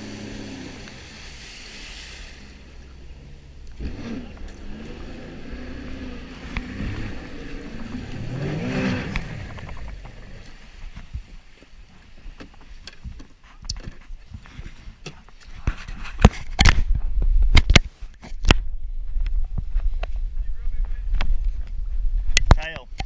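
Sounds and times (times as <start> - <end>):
jet ski engine running: 0.0 - 12.4.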